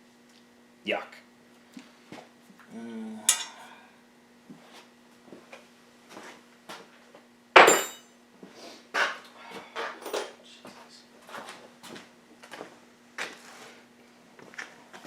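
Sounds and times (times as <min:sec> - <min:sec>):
loud metallic clank: 0:03.3 - 0:03.6
metal tools clinking and knocking: 0:03.3 - 0:03.7, 0:07.6 - 0:08.1.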